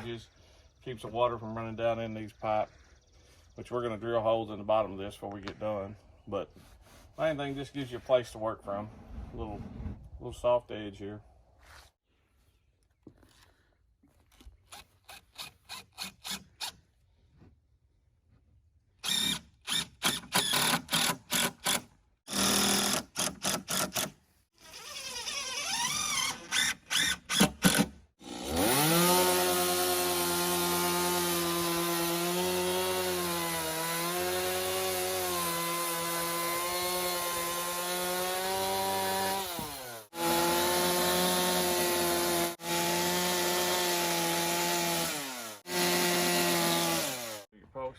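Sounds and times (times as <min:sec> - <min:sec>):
power tool motor running: 0:22.3 - 0:47.5.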